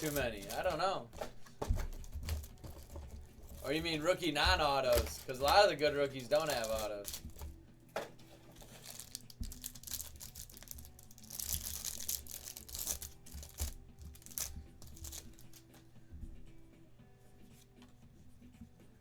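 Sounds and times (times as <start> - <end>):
wrapper crinkling and tearing: 0.0 - 3.8, 4.6 - 7.5, 8.5 - 15.7
cards being handled: 0.0 - 16.0.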